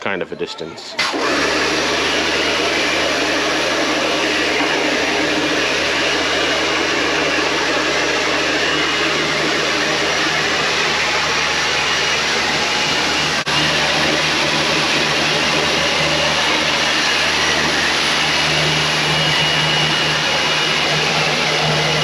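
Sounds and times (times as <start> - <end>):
pressure washer motor humming: 1.0 - 22.0.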